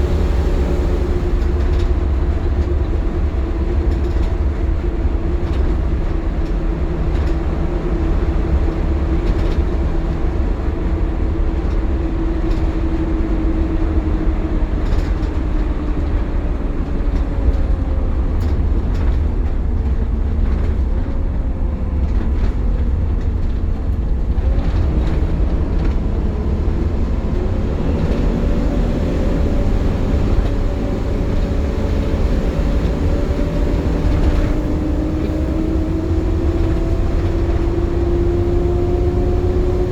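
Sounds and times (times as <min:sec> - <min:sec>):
bus engine and road rumble: 0:00.0 - 0:39.9
bus whine: 0:00.0 - 0:39.9.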